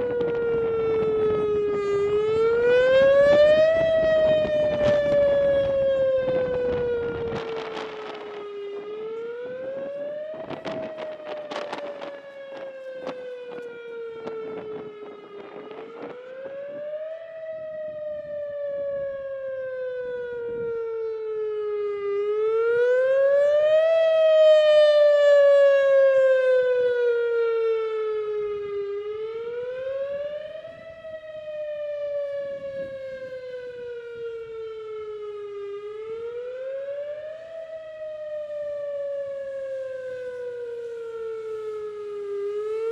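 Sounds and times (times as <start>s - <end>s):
wind noise on microphone: 0.0s - 19.4s, 28.3s - 35.0s
warning siren wailing: 0.0s - 42.9s.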